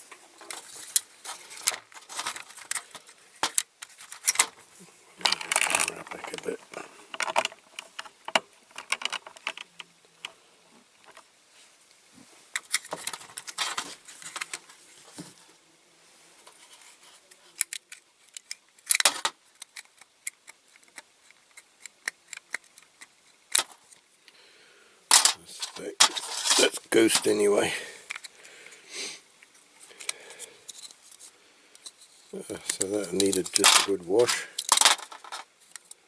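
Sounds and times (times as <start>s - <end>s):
small parts rattling: 0.4s - 4.6s, 5.2s - 10.4s, 12.6s - 14.6s, 17.6s - 24.0s, 25.1s - 28.4s, 29.8s - 36.0s
small parts clicking on a surface: 5.2s - 6.5s, 7.1s - 10.4s, 17.6s - 24.0s, 25.1s - 27.4s, 32.6s - 36.0s.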